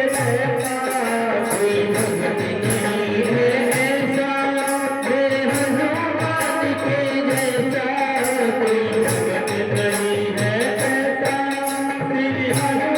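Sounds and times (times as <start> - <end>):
small cymbals jingling: 0.0 - 12.9
steady drum beat: 0.0 - 12.9.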